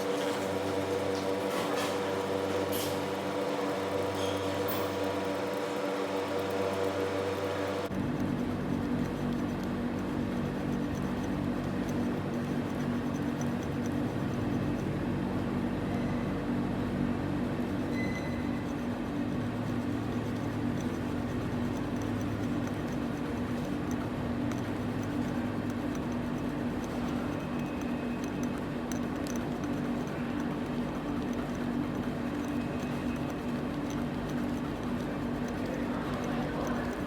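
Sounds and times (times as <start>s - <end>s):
low machine hum: 0.0s - 37.0s.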